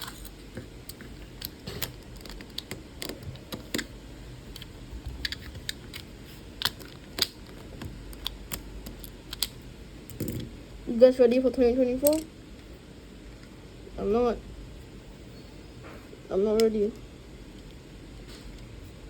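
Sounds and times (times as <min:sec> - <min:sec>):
plastic parts clicking and tapping: 0:00.0 - 0:10.5, 0:12.0 - 0:12.3.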